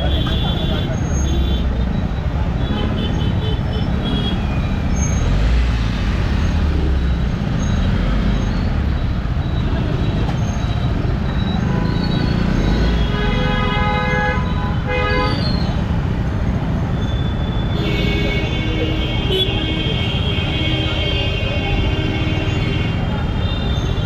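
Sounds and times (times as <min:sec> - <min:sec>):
road and traffic noise: 0:00.0 - 0:24.0.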